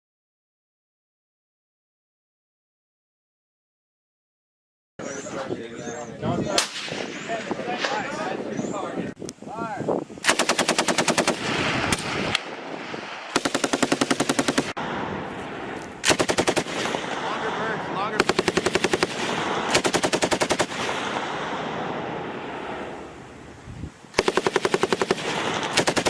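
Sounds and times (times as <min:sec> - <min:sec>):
machine gun bursts: 0:10.3 - 0:11.4, 0:13.4 - 0:14.8, 0:16.0 - 0:16.9, 0:18.2 - 0:20.9, 0:24.2 - 0:26.0.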